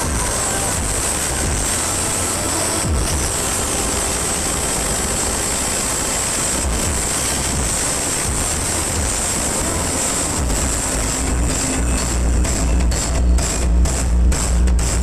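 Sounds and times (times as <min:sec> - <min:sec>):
distorted noise wash: 0:00.0 - 0:15.0
low bass thumps: 0:02.8 - 0:03.6, 0:06.6 - 0:15.0.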